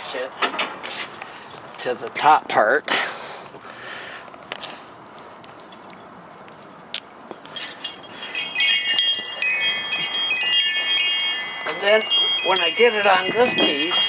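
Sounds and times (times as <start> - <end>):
wind chime ringing: 1.3 - 2.5, 4.8 - 14.0.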